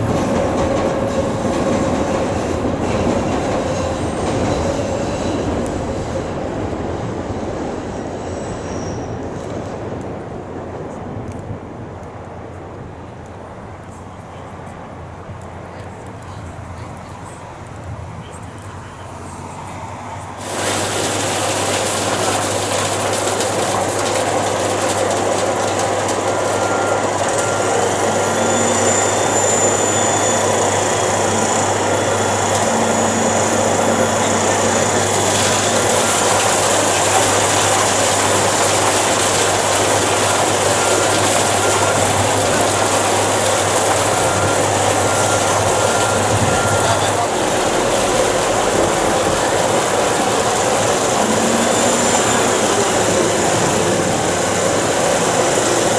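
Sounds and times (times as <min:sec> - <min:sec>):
machine hiss with whines: 0:20.4 - 0:55.9.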